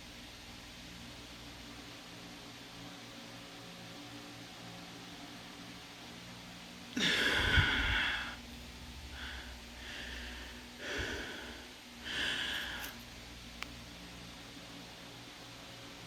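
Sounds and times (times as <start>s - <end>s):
hard hissy breaths: 6.9s - 13.2s.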